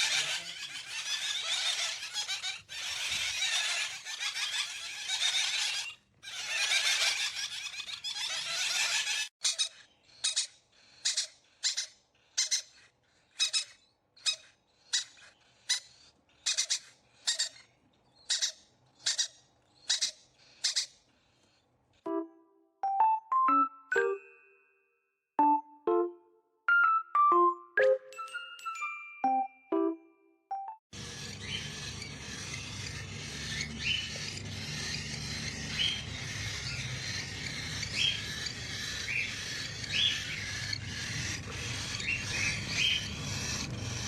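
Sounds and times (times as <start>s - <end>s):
parrot screeching and squawking: 0.0s - 21.7s, 31.0s - 44.0s.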